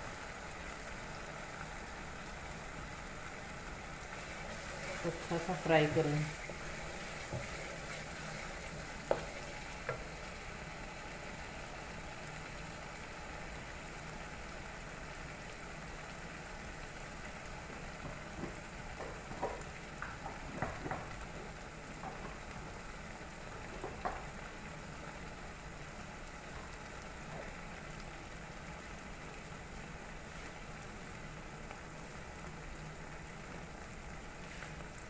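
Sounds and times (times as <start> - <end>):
paste sizzling in hot oil: 4.0 - 10.6.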